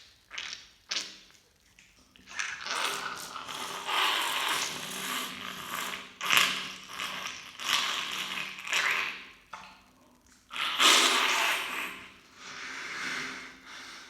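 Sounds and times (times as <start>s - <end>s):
nose being blown hard: 10.6s - 14.0s.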